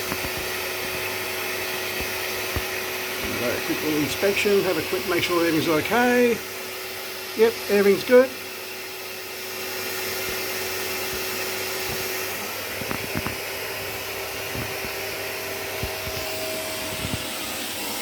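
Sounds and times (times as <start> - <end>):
fan rushing air: 9.4 - 18.0.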